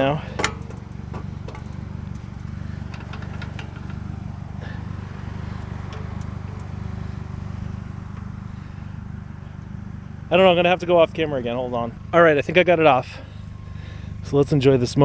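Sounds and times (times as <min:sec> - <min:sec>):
low mechanical drone: 0:00.0 - 0:15.0
metal clicks: 0:00.3 - 0:07.0.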